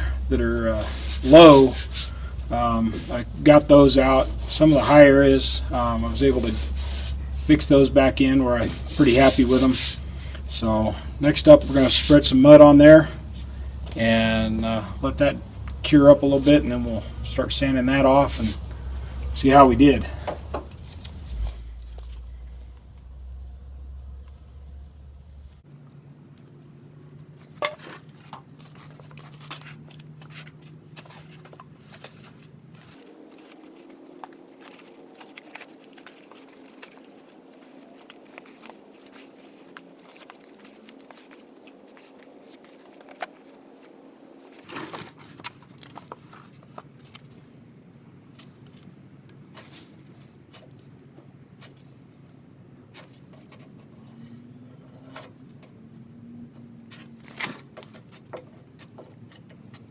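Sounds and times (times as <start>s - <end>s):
low steady hum: 0.0s - 59.9s
plastic spreader scraping filler: 27.0s - 47.3s.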